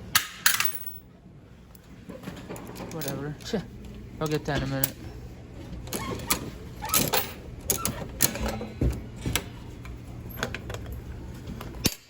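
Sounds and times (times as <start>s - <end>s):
prize machine motor hum: 1.8s - 11.9s.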